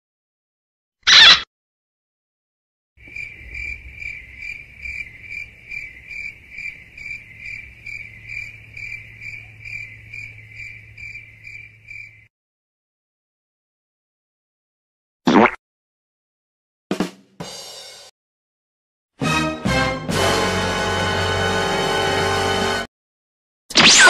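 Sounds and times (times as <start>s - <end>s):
cricket chirps: 3.0s - 12.3s.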